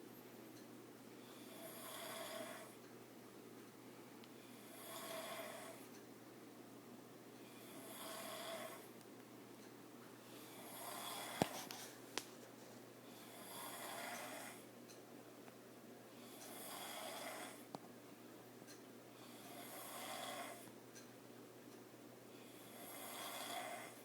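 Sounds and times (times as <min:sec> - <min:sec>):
person snoring: 0:01.4 - 0:02.8, 0:04.6 - 0:05.8, 0:07.6 - 0:08.8, 0:10.5 - 0:11.5, 0:13.3 - 0:14.6, 0:16.5 - 0:17.7, 0:19.3 - 0:20.6, 0:22.5 - 0:24.0.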